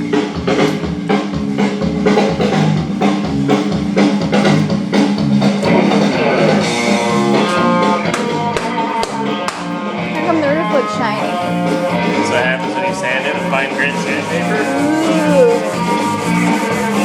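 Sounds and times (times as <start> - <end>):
steady drum beat: 0.0 - 17.0
rock song with electric guitar: 3.5 - 14.0.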